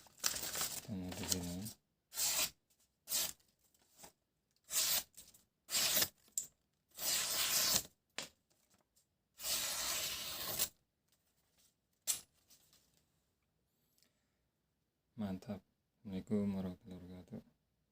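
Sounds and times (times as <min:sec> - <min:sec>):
knife slicing tissue paper: 0:07.0 - 0:07.9, 0:09.4 - 0:10.7.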